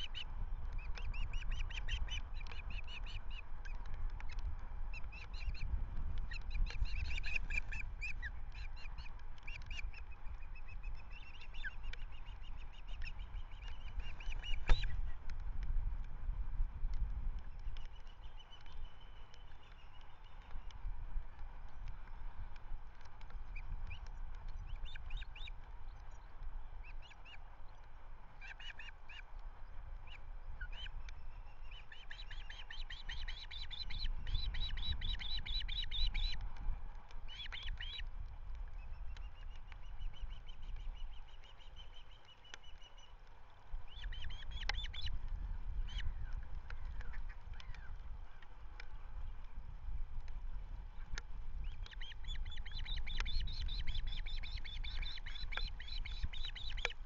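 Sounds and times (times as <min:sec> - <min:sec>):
wind rumble on microphone: 0:00.0 - 0:57.0
ospreys chirping: 0:00.8 - 0:04.4, 0:05.0 - 0:15.1, 0:30.1 - 0:36.4, 0:37.3 - 0:38.0, 0:43.9 - 0:45.2, 0:51.6 - 0:57.0.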